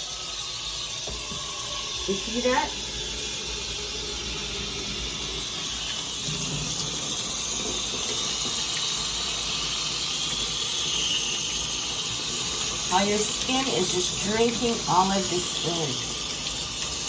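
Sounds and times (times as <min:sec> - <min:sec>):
water spraying from shower head: 0:00.0 - 0:17.0.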